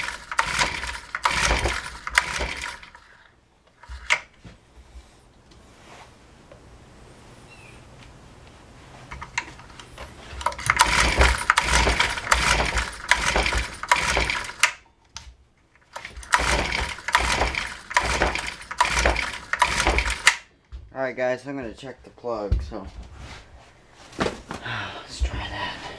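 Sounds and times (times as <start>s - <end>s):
small engine cranking: 0.0s - 4.2s, 10.4s - 14.8s, 15.8s - 20.5s.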